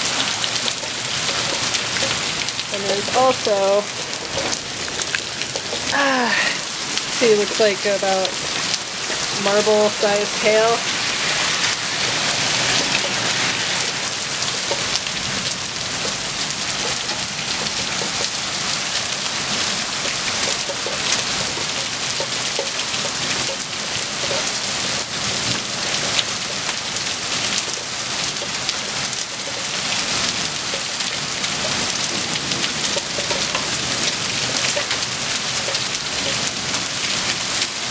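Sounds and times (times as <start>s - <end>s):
hail hits: 0.0s - 37.9s
heavy rain hiss: 0.0s - 37.9s.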